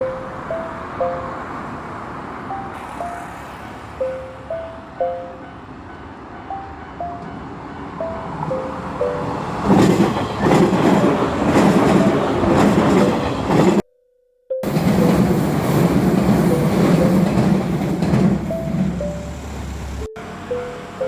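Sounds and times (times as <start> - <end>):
electric train rumbling past: 0.0 - 13.8, 14.6 - 21.0
wheels clacking over rail joints: 4.3 - 13.8, 14.6 - 21.0.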